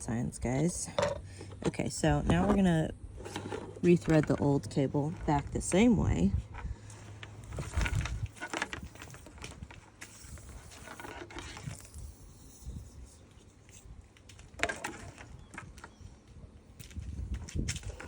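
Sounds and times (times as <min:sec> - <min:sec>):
cable rustling: 0:02.3 - 0:16.0.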